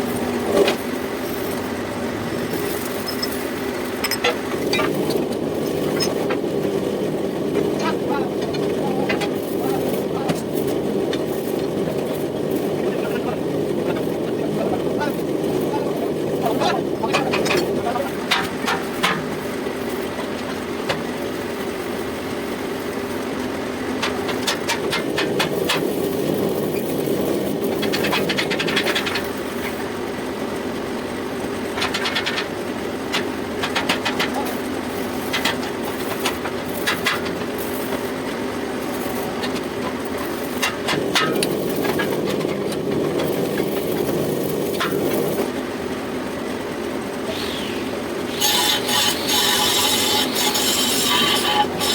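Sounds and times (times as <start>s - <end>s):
cutting tool scraping metal: 33.6s - 38.2s, 47.3s - 51.9s
metal lathe motor hum: 47.2s - 51.9s.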